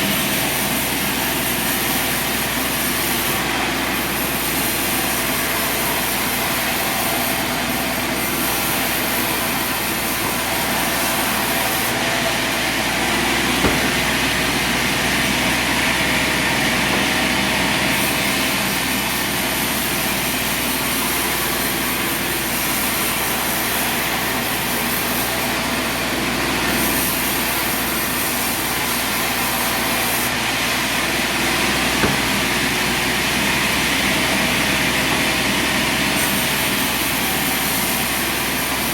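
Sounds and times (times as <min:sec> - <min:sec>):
saw blade hissing through log: 0:00.0 - 0:38.9
sawmill engine droning: 0:00.0 - 0:38.9
sharp knocks: 0:13.3 - 0:18.6, 0:31.9 - 0:32.8.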